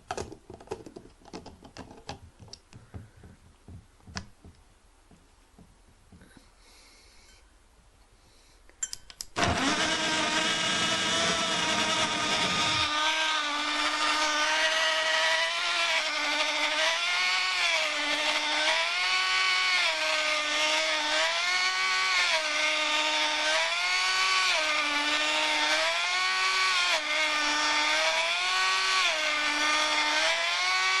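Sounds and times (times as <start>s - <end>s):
blender motor whining: 9.4s - 31.0s.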